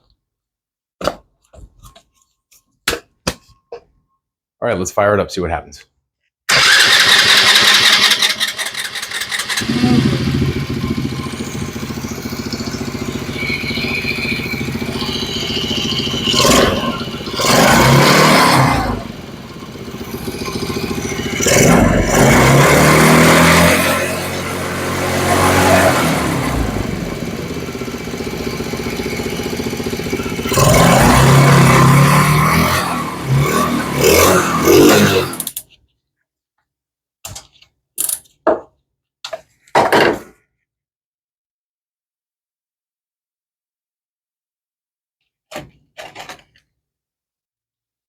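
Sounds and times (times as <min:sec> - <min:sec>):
engine revving: 0:06.5 - 0:35.6
small engine cranking and idling: 0:06.5 - 0:35.6.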